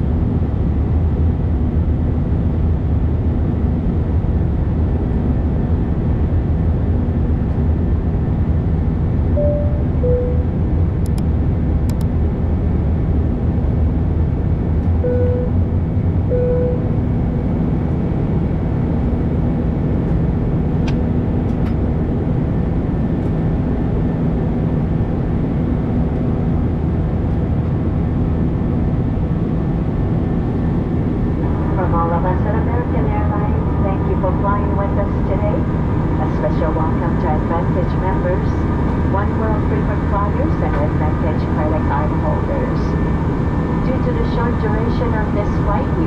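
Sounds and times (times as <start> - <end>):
aircraft cabin engine rush: 0.0 - 46.0.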